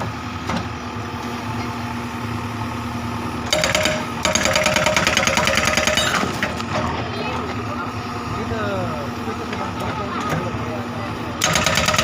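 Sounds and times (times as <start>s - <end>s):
diesel engine running: 0.0s - 12.0s
hydraulic rock breaker hammering: 3.5s - 6.6s, 11.4s - 12.0s.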